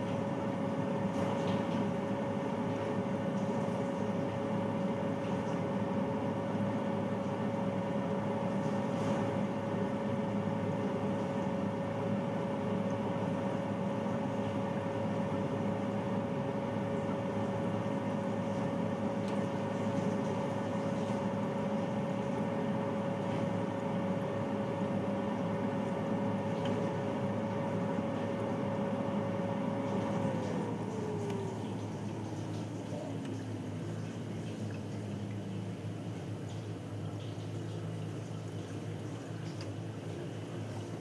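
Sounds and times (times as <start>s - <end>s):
water heater boiler droning: 0.0s - 41.0s.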